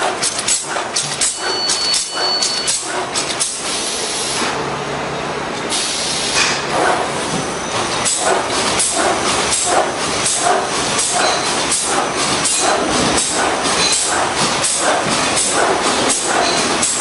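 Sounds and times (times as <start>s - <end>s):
machine clacking rhythmically: 0.0s - 3.8s, 7.8s - 17.0s.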